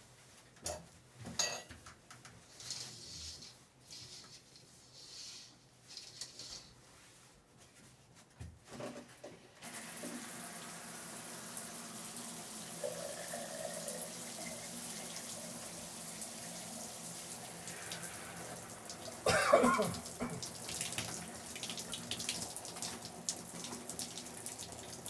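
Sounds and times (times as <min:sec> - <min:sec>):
shower water spraying: 0:09.6 - 0:25.0.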